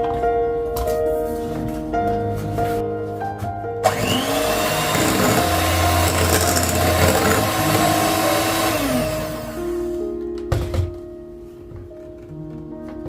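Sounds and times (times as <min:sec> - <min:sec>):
soft background music: 0:00.0 - 0:13.0
electric mixer motor running: 0:03.8 - 0:09.8.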